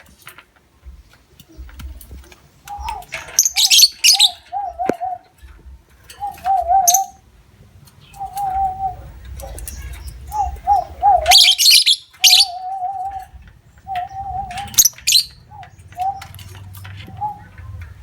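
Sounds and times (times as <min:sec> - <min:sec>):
lovebirds chattering: 0:00.8 - 0:18.0
lower warbling bird call: 0:06.2 - 0:07.2, 0:08.1 - 0:09.1, 0:10.2 - 0:16.4.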